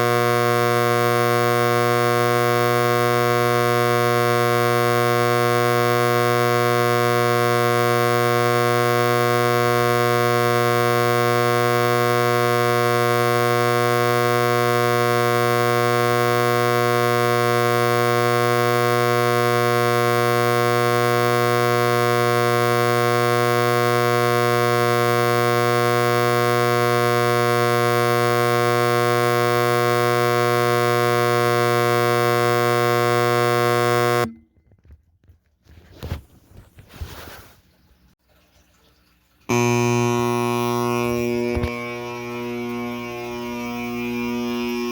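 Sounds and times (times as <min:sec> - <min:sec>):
fire alarm horn blaring: 0:39.5 - 0:44.9.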